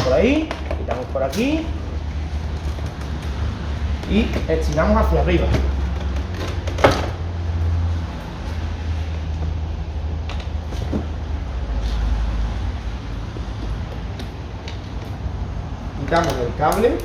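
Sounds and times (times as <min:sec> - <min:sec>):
faint clicks and handling knocks: 0:02.5 - 0:07.2.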